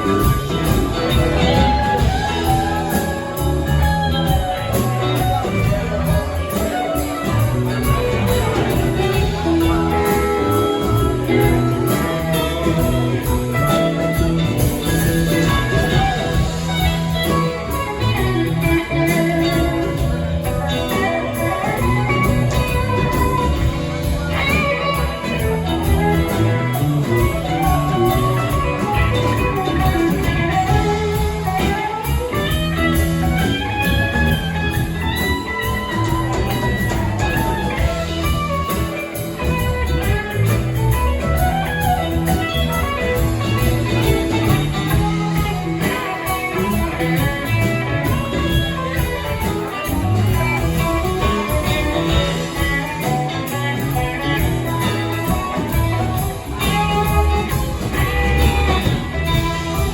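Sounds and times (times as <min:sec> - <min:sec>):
bass line: 0:00.0 - 0:59.9
electric guitar melody: 0:00.0 - 0:59.9.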